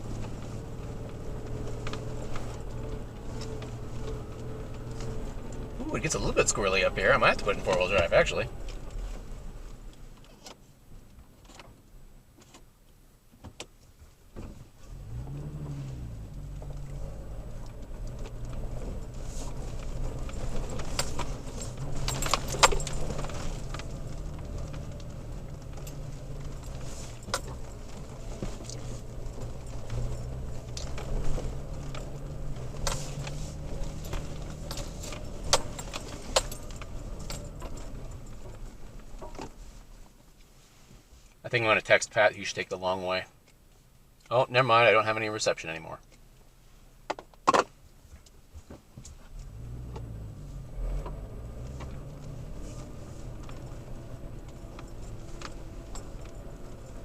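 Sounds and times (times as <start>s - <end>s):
truck engine running: 0.0s - 9.6s, 15.0s - 39.3s.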